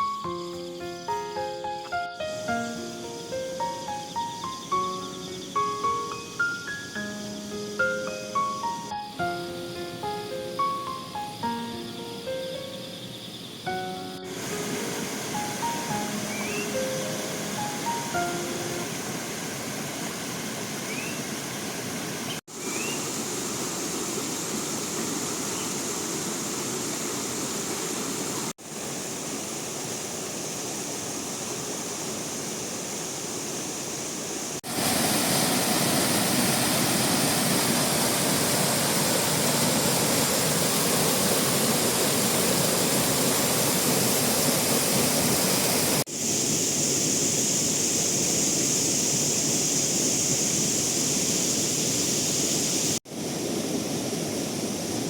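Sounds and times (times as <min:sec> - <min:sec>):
rushing flowing water: 0:00.0 - 0:12.8, 0:13.7 - 0:55.0.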